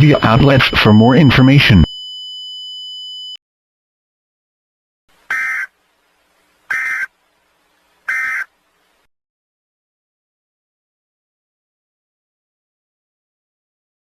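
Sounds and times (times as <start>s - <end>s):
steady electronic tone: 0.0s - 1.8s
digital data bursts: 0.0s - 1.9s.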